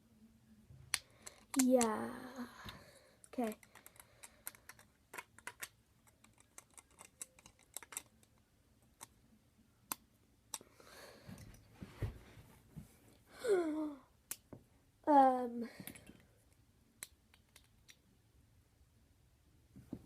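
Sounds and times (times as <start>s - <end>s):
plastic bricks clicking: 3.4s - 9.2s.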